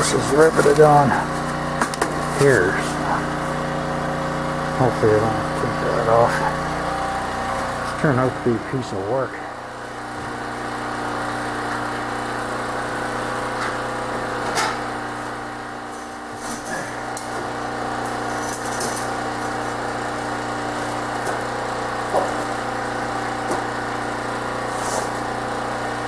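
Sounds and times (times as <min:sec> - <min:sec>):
steady machine hum: 0:00.0 - 0:26.0.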